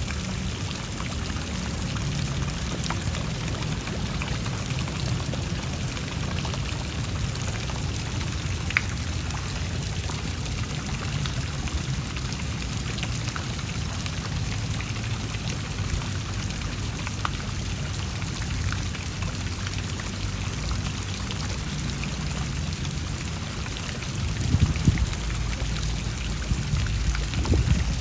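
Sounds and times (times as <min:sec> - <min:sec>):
rain pattering: 0:00.0 - 0:28.0
heavy low bumps: 0:26.4 - 0:28.0.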